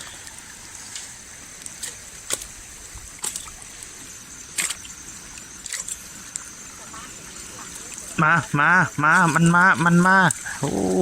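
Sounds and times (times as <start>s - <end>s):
water trickling: 0.0s - 11.0s
short sharp splashes: 4.5s - 4.9s, 5.6s - 6.1s.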